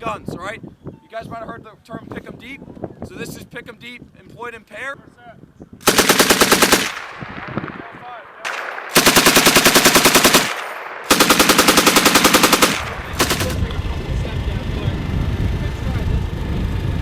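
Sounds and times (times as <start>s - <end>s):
machine guns firing bursts: 5.8s - 13.6s.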